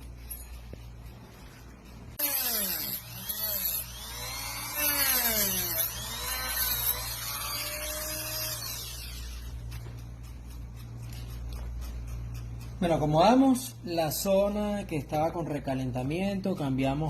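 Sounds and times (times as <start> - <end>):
rotary tool whine: 0.0 - 10.1.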